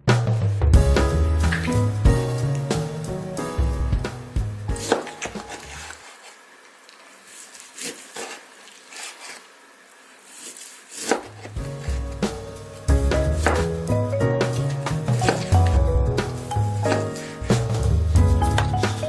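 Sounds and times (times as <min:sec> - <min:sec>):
background music: 0:00.0 - 0:05.8, 0:11.5 - 0:19.0
knife knocking on cutting board: 0:13.1 - 0:13.8.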